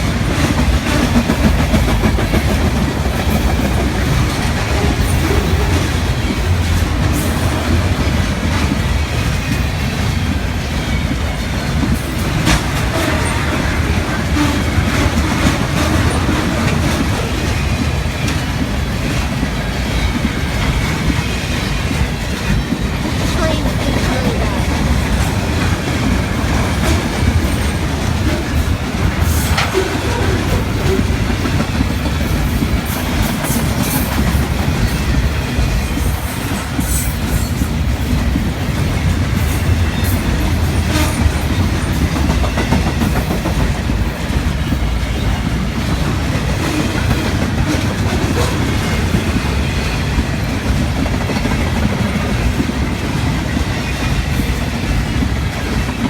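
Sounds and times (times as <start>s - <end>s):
train wheels rumbling on rails: 0.0s - 56.0s
wheel clacks: 11.7s - 56.0s.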